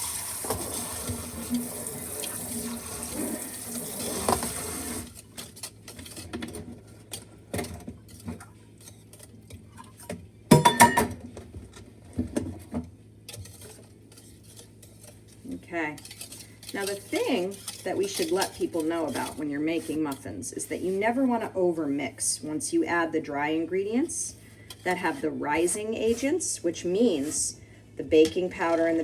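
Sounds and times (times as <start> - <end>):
tap running into sink: 0.0 - 5.1.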